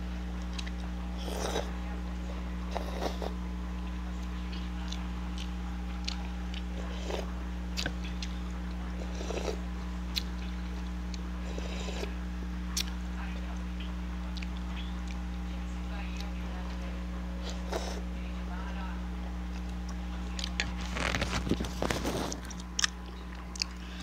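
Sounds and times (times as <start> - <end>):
low hum: 0.0 - 24.0
person chewing and slurping: 8.9 - 10.4, 11.1 - 12.1, 20.4 - 24.0.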